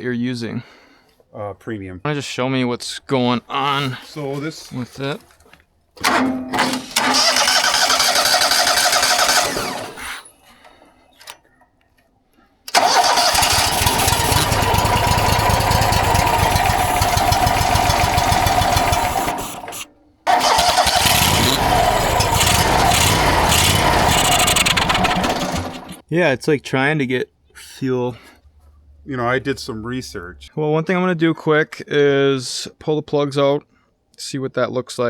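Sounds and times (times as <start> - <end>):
sawmill engine starting: 6.0 - 10.8, 12.7 - 26.0.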